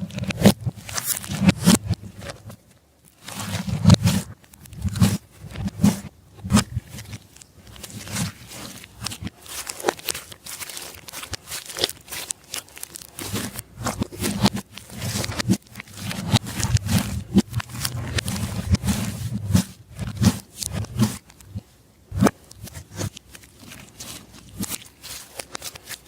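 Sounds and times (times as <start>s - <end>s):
slime popping and crackling: 3.2s - 21.6s.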